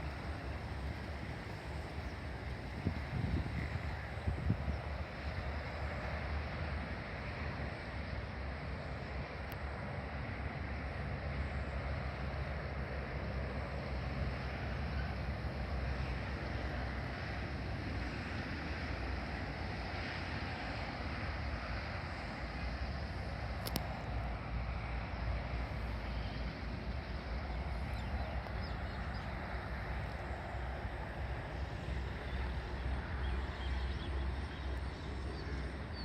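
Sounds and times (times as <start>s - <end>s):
steady low rumble: 0.0s - 36.0s
wind hiss on microphone: 0.0s - 36.0s.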